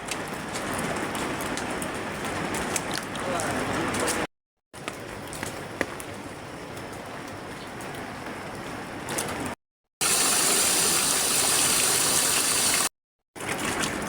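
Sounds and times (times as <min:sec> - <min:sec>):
rushing water: 0:10.0 - 0:14.0.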